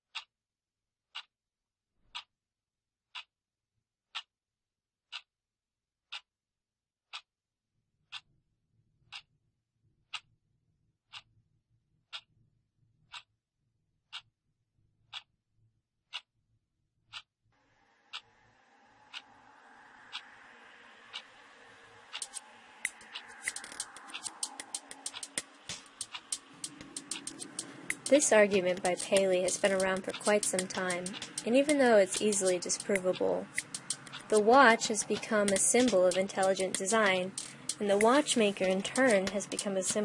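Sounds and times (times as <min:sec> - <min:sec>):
clock ticking: 0:10.1 - 0:10.3, 0:18.9 - 0:40.0
wash of sound: 0:17.6 - 0:28.2.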